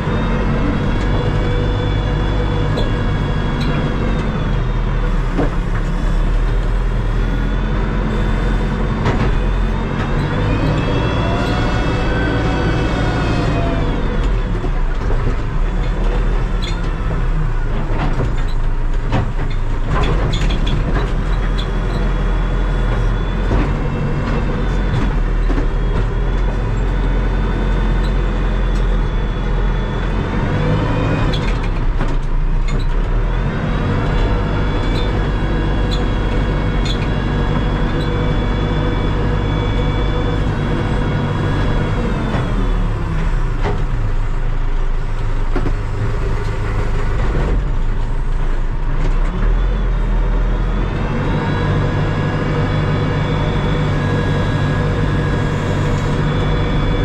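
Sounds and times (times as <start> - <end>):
diesel engine under load: 0.0 - 57.0
knocks and clanks: 8.9 - 11.7, 14.2 - 22.2.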